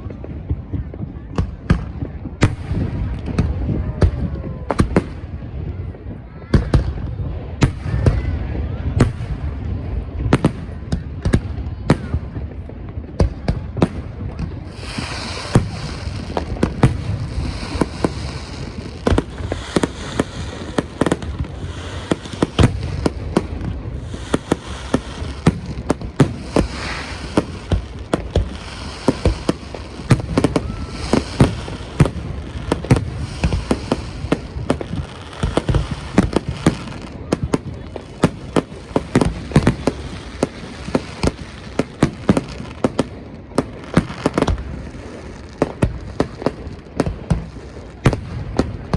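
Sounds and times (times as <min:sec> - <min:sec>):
fireworks bangs: 0:00.0 - 0:48.9
hissing crackle: 0:14.6 - 0:42.6.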